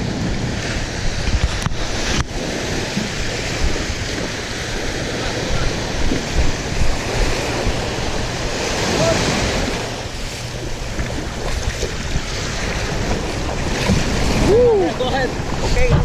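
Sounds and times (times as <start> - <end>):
sea waves: 0.0 - 16.0
wind buffeting microphone: 0.0 - 16.0
splashing water: 1.2 - 16.0.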